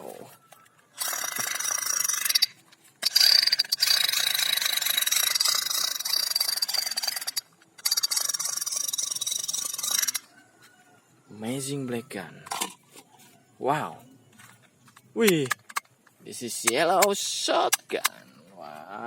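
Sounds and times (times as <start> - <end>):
toy gun rasping rattle: 0.9 - 10.3.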